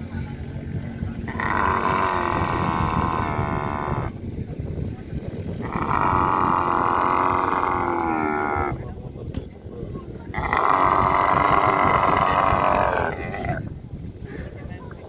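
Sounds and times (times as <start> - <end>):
camel calling: 1.2 - 4.2, 5.6 - 8.8, 10.3 - 13.7.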